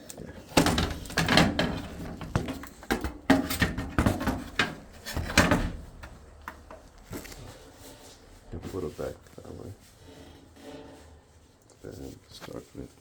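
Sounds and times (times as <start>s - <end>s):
washer parts knocking and clattering: 0.4s - 6.8s.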